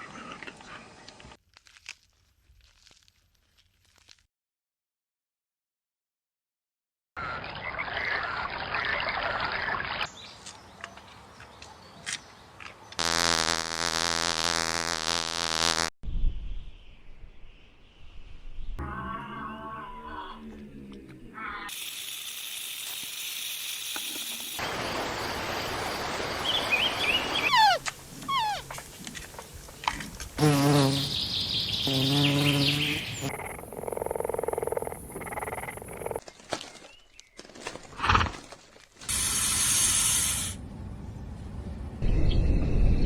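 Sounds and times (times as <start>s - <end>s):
animal and nature sounds: 0.0s - 4.2s, 7.2s - 13.3s, 16.6s - 42.9s
falling gliding calls: 24.6s - 29.0s
repeated pitched animal calls: 27.2s - 28.8s, 31.9s - 36.2s.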